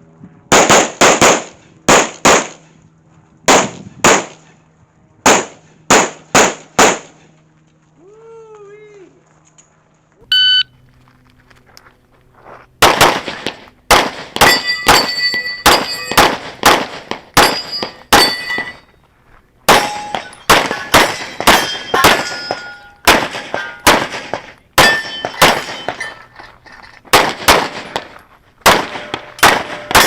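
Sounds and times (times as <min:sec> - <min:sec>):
rapid pistol shots: 0:00.5 - 0:02.6, 0:03.5 - 0:04.4, 0:05.2 - 0:07.2, 0:12.8 - 0:18.7, 0:19.7 - 0:26.0, 0:27.1 - 0:30.0
steel target clanging: 0:14.4 - 0:16.4, 0:17.4 - 0:19.0, 0:19.7 - 0:30.0.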